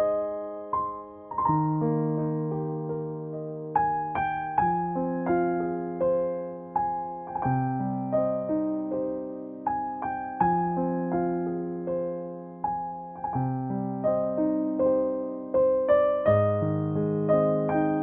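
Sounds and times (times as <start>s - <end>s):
slow gentle piano music: 0.0s - 18.0s.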